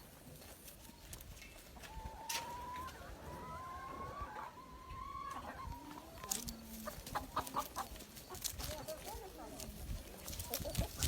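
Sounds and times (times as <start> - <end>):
chicken drawn-out call: 1.8 - 8.4.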